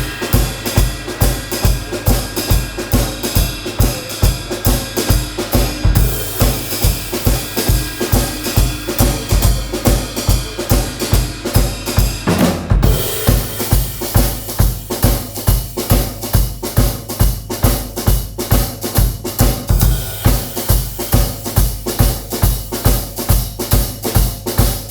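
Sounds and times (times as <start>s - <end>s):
ringing cymbals: 0.0s - 12.2s, 12.8s - 16.0s
bass drum: 0.0s - 24.9s.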